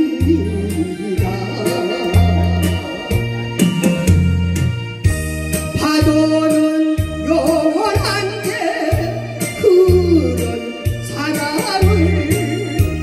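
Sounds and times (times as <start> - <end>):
steady bass beat: 0.0 - 5.8
keyboard backing track: 0.0 - 13.0.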